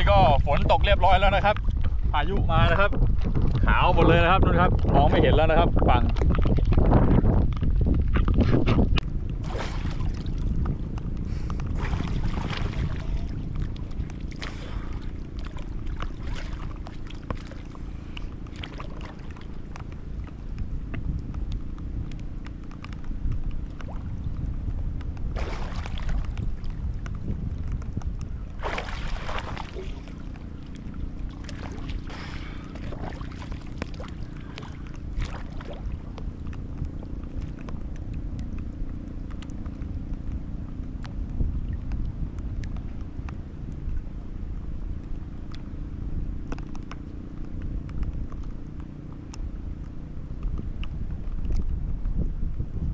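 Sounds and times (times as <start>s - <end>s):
rain drops ticking on boat: 4.3s - 9.4s, 10.3s - 11.8s, 12.8s - 28.6s, 29.5s - 52.7s
low steady rain rumble: 12.8s - 52.9s.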